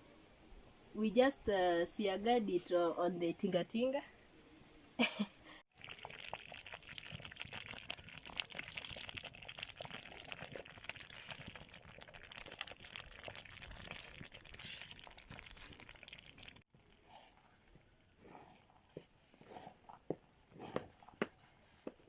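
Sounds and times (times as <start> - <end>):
pot crackling and bubbling: 5.7 - 22.0.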